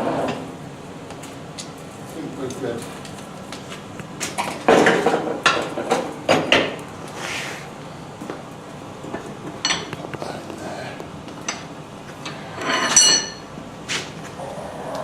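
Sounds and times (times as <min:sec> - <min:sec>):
metal tools clanking and scraping: 0:11.4 - 0:13.5.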